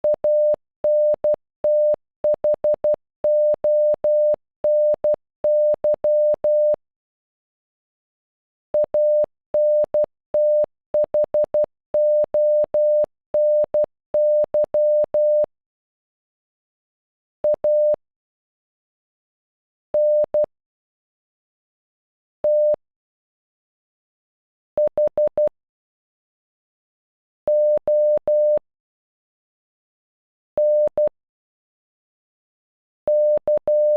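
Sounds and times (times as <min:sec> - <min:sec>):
morse code electronic beeps: 0:33.1 - 0:33.9.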